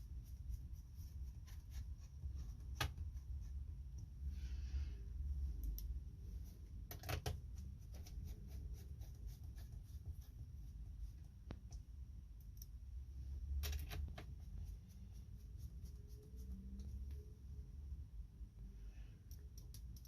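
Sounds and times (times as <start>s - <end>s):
low steady rumble: 0.0s - 20.0s
laptop parts clicking and tapping: 6.8s - 8.1s.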